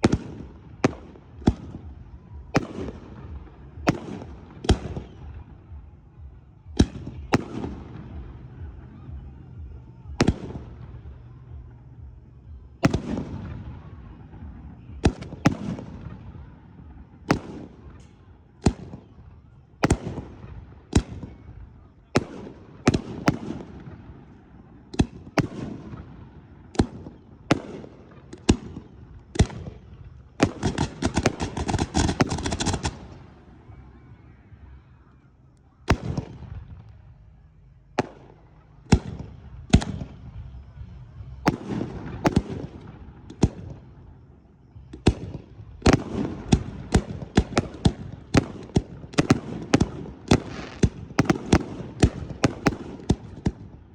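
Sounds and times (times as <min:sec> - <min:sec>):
fireworks booming: 0:00.0 - 0:33.7, 0:38.0 - 0:53.9
crackling firework pops: 0:24.9 - 0:26.0, 0:30.4 - 0:33.1.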